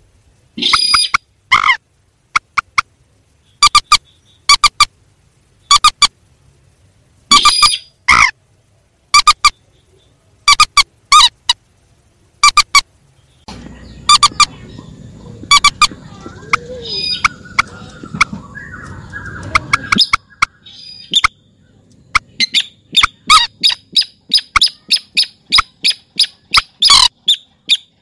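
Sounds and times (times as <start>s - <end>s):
harsh bird squawk: 0.6s - 2.9s, 3.5s - 4.9s, 5.6s - 6.1s, 7.3s - 8.4s, 9.1s - 9.6s, 10.4s - 11.6s, 12.4s - 12.9s, 13.7s - 21.4s, 22.1s - 28.0s
birds calling sharply: 7.3s - 8.3s, 12.4s - 28.0s.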